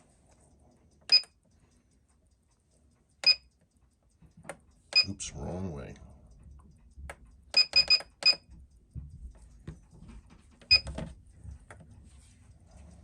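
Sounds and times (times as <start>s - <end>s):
sharp ringing clicks: 1.0s - 1.4s, 3.2s - 3.7s, 4.5s - 5.3s, 7.3s - 8.5s.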